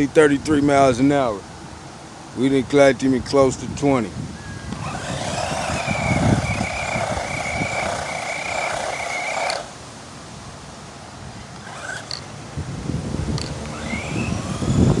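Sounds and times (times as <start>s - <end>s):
electric motor whine: 4.7s - 9.8s, 11.6s - 12.3s, 13.0s - 15.0s.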